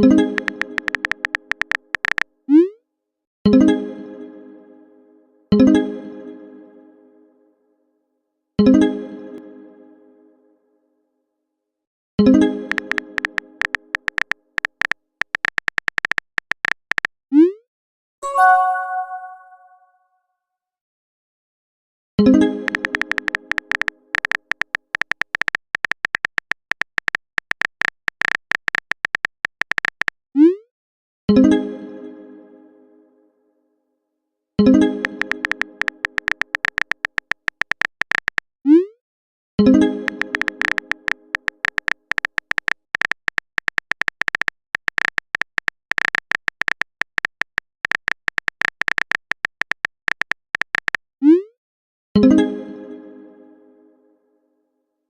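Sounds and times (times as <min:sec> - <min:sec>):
typing clicks: 0:00.2 - 0:02.2, 0:12.6 - 0:17.1, 0:22.6 - 0:30.2, 0:35.0 - 0:38.5, 0:40.1 - 0:51.0
message alert chime: 0:18.2 - 0:19.8.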